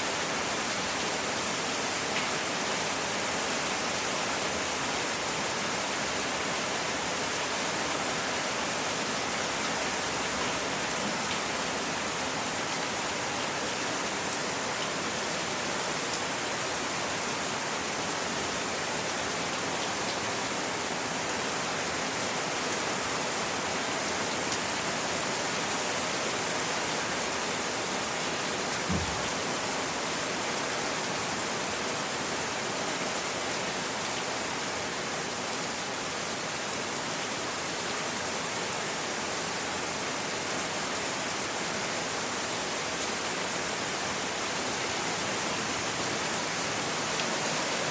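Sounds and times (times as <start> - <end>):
short low thump: 28.9 - 29.2.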